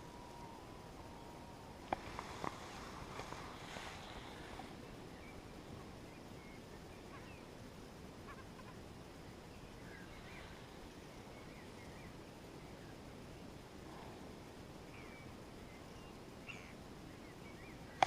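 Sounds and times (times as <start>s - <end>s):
faint bird chirps: 0.0s - 7.6s, 9.4s - 13.5s, 14.8s - 18.0s
low background hiss: 0.0s - 18.0s.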